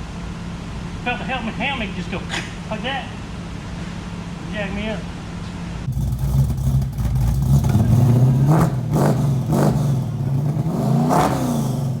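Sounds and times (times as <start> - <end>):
car engine revving: 5.9 - 12.0.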